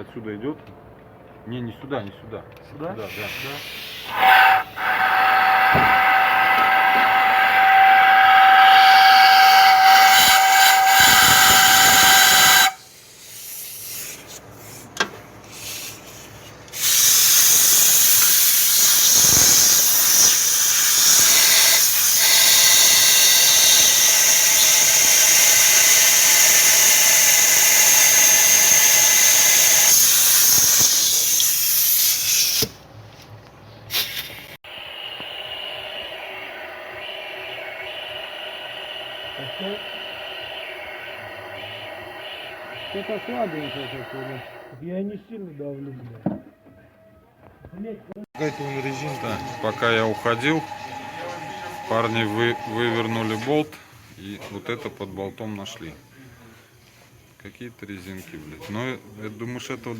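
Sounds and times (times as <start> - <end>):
air whistle: 3.0 - 12.9, 16.8 - 32.7, 34.6 - 44.8, 48.4 - 53.6
compressed air hissing: 3.0 - 14.8, 15.4 - 32.8, 33.9 - 44.8, 48.4 - 53.6.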